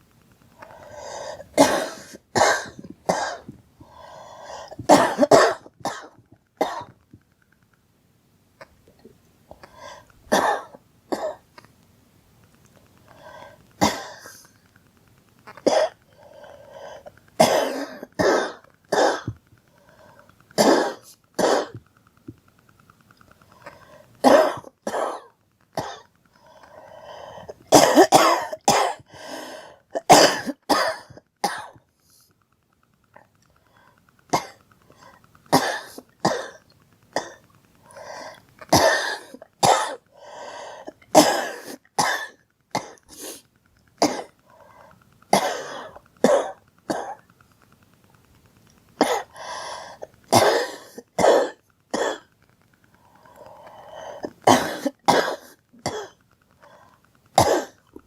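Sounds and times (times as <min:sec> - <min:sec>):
girl coughing: 0:01.6 - 0:03.5, 0:04.9 - 0:06.9, 0:17.4 - 0:19.3, 0:20.6 - 0:21.8, 0:27.7 - 0:29.0, 0:30.0 - 0:31.7, 0:38.7 - 0:40.0, 0:41.2 - 0:43.0, 0:45.4 - 0:47.2, 0:49.0 - 0:49.3, 0:50.3 - 0:52.2, 0:54.4 - 0:56.2, 0:57.4 - 0:57.8.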